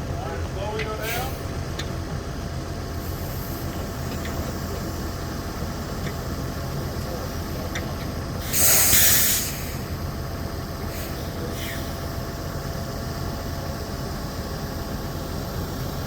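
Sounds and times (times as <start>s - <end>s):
heavy vehicle engine running: 0.0s - 16.0s
loud air hiss: 8.4s - 10.0s, 10.9s - 12.0s.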